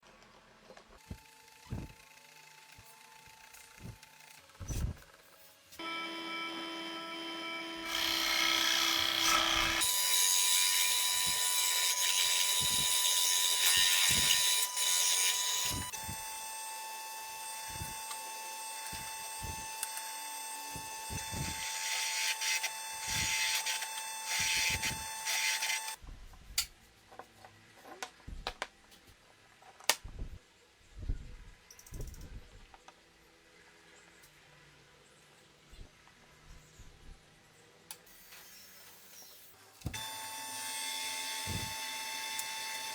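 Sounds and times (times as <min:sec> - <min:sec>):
power tools whining: 0:05.8 - 0:26.0, 0:38.4 - 0:42.9.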